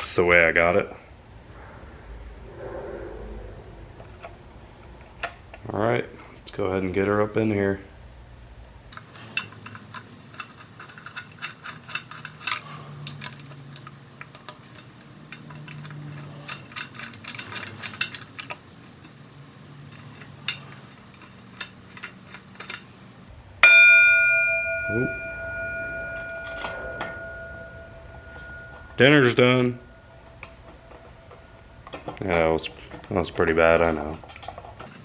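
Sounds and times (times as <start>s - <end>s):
metallic clicks of parts handled: 8.9s - 23.3s, 34.4s - 35.0s
timer chime: 23.6s - 30.0s.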